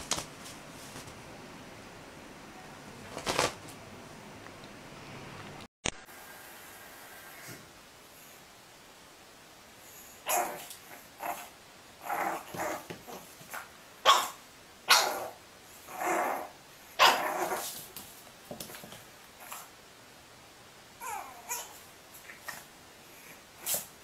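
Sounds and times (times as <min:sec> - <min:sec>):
dog barking: 0:14.0 - 0:15.3, 0:17.0 - 0:17.3.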